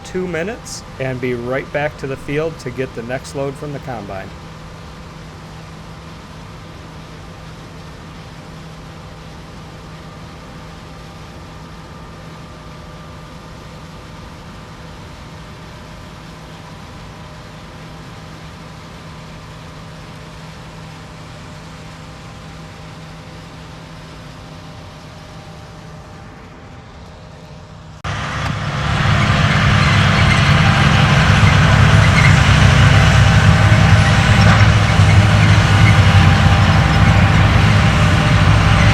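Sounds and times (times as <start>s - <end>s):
loud machine engine drone: 0.0s - 5.2s, 28.1s - 38.9s
harvest machinery engines humming: 0.0s - 5.4s, 28.1s - 38.9s.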